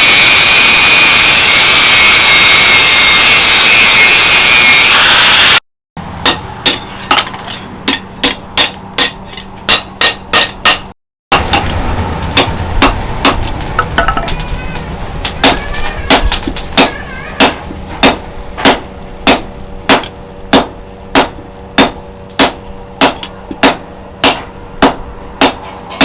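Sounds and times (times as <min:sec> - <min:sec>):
loud power tool: 0:00.0 - 0:05.6.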